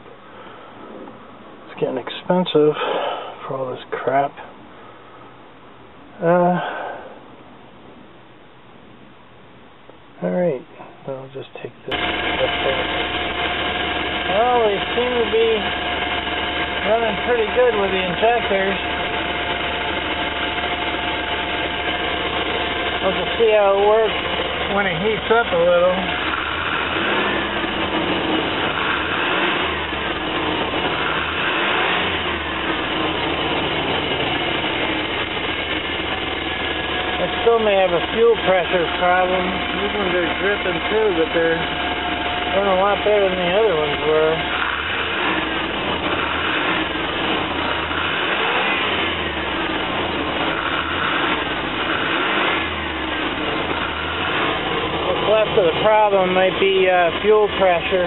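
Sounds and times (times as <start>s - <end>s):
van engine running: 11.9s - 58.0s.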